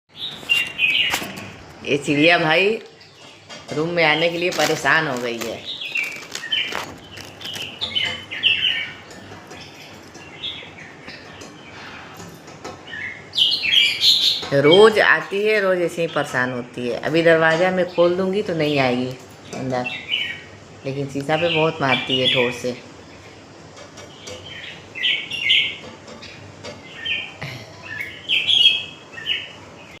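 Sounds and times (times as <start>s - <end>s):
small bird chirping: 0.1s - 15.4s, 17.9s - 30.0s.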